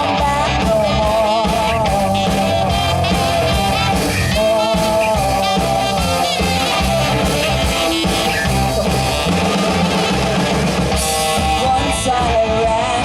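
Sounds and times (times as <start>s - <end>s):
live band playing rock music: 0.0s - 13.0s.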